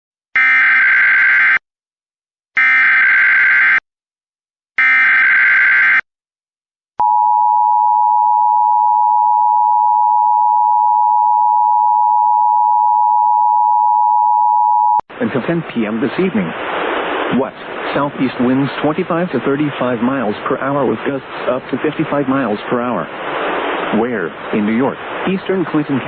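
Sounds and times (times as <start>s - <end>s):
steady attention tone: 7.0s - 15.0s.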